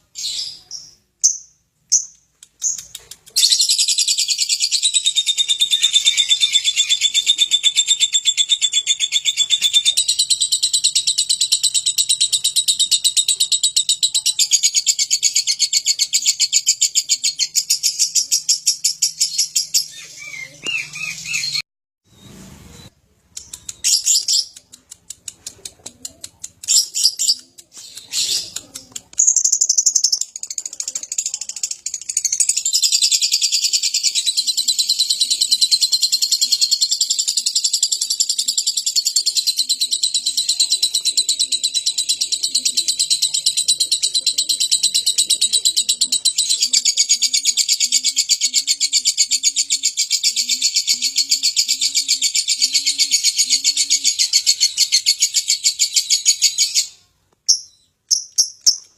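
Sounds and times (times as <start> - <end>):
bird chattering trill: 0.3 - 21.6, 25.3 - 56.9
bird clicks and chirps: 1.2 - 5.1, 23.3 - 32.7, 57.4 - 58.9.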